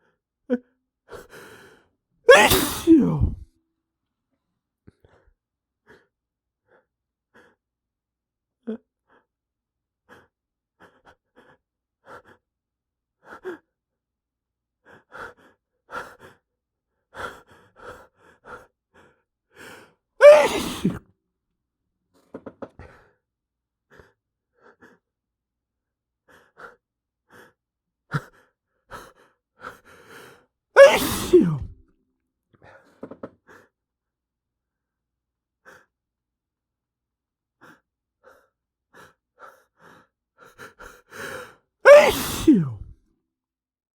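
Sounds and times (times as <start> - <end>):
short breaths and gasps: 1.1 - 3.4, 17.2 - 21.0, 26.3 - 31.8, 37.6 - 42.9
man sneezing loudly: 2.3 - 3.4, 20.2 - 21.0, 30.8 - 31.7, 41.9 - 42.9.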